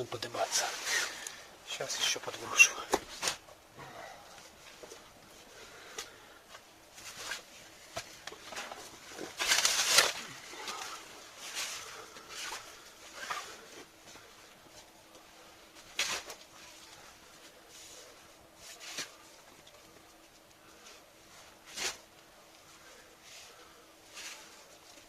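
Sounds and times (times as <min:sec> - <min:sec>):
material scraping and rustling: 0:06.6 - 0:14.8, 0:15.7 - 0:19.5, 0:20.7 - 0:25.0.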